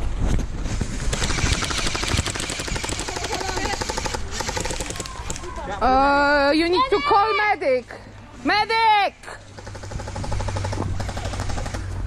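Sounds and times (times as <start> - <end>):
airsoft guns firing: 1.0 - 5.7, 9.5 - 11.9.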